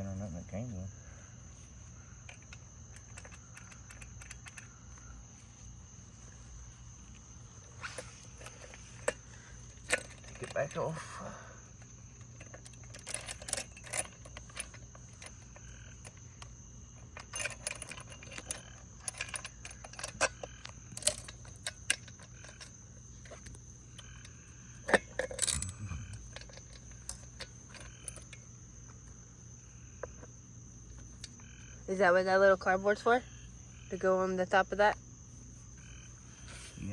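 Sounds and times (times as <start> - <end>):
small metal parts clinking: 2.2 - 5.0, 7.8 - 11.0, 11.6 - 29.2.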